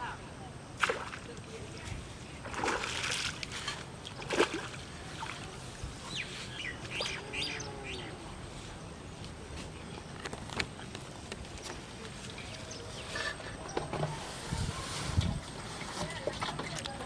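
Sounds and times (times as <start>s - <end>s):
sharp water slaps: 0.8s - 1.3s, 2.4s - 3.5s, 4.1s - 4.8s
water splashing: 0.8s - 1.6s, 2.3s - 5.8s
birds chirping: 4.9s - 10.2s, 10.8s - 14.2s.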